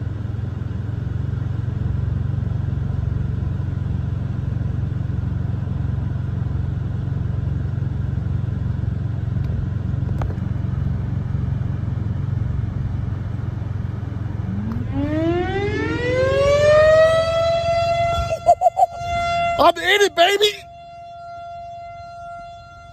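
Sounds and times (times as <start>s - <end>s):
vehicle engine idling: 0.0s - 22.9s
warning siren wailing: 14.2s - 22.9s.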